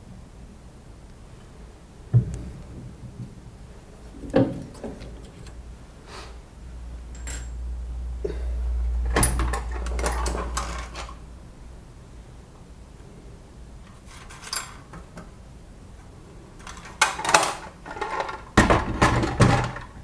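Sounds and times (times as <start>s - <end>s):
metal tools clattering: 7.1s - 7.6s, 9.2s - 11.2s, 14.1s - 14.9s, 16.6s - 18.5s.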